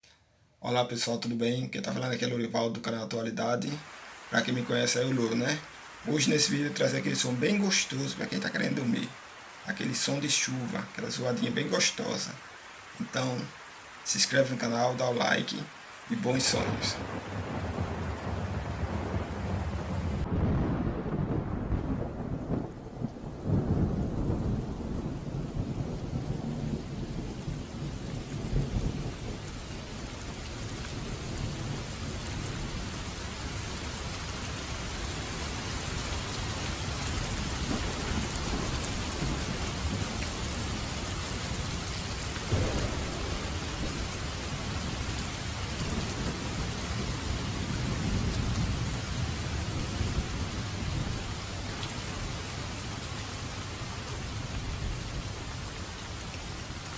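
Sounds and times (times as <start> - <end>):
heavy rain: 1.8 - 56.9
thunder rumbling: 3.8 - 33.0, 37.0 - 55.7
thunder burst: 16.4 - 29.5, 42.5 - 45.1.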